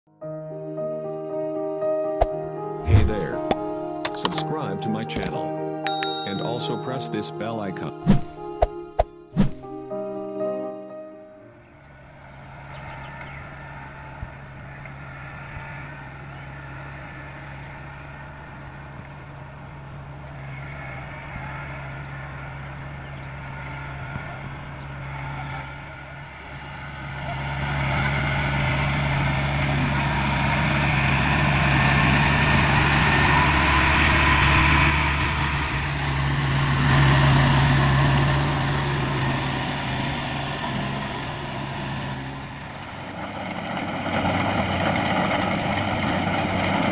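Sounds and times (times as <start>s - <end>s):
combine harvester diesel engine: 11.4s - 46.9s.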